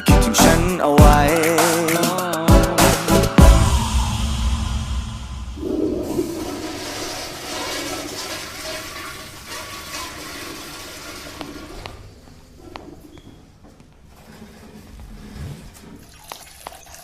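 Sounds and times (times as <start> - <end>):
rushing swirling water: 5.0 - 11.4.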